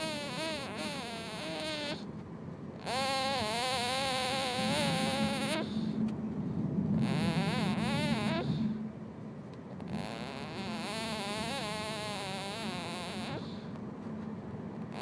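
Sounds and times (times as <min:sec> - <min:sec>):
baby snoring squeaky breaths: 0:00.0 - 0:02.1, 0:02.8 - 0:06.0, 0:07.0 - 0:08.8, 0:09.9 - 0:13.7
low rough rumble: 0:00.0 - 0:12.1.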